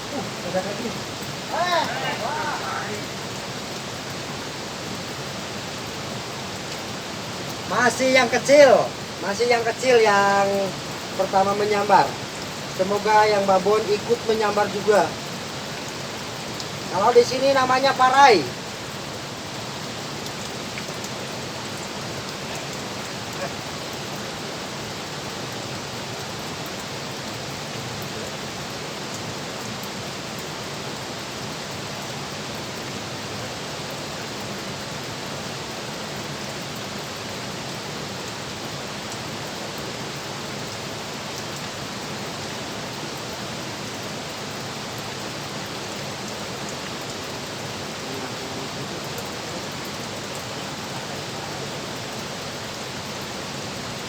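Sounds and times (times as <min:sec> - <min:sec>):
water rushing over a dam: 0:00.0 - 0:54.0.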